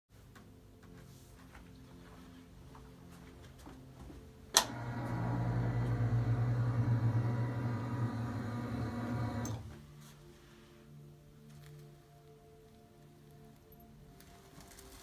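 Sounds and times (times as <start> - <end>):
small electric motor humming: 4.7 - 9.6.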